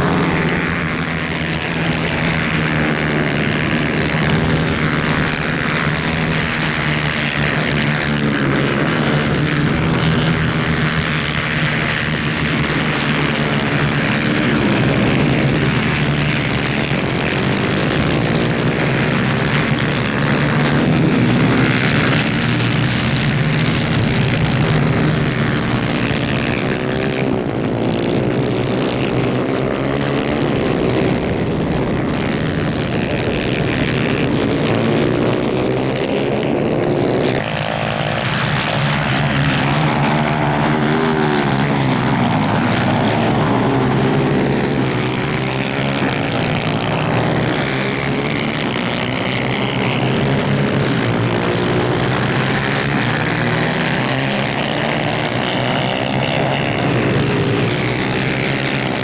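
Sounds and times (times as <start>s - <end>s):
kart engines racing at high revs: 0.0s - 59.0s.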